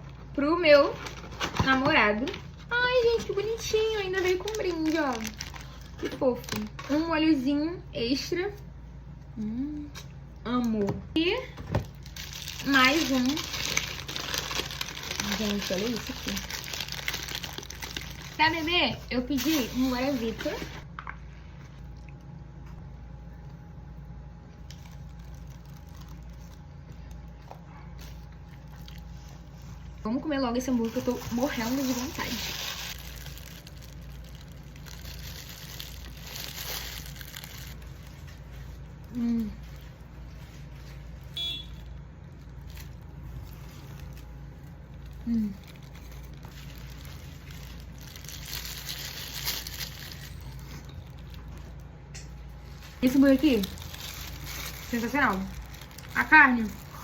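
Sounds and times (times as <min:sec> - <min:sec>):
low background hum: 0:00.0 - 0:57.0
paper wrapper crinkling: 0:00.7 - 0:07.0, 0:11.8 - 0:20.9, 0:24.6 - 0:27.4, 0:30.6 - 0:41.3, 0:42.3 - 0:51.9, 0:52.6 - 0:57.0.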